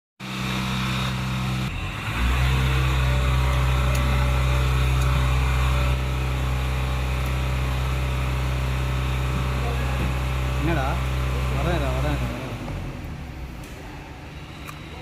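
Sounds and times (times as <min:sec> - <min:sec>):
truck engine running: 0:00.2 - 0:15.0.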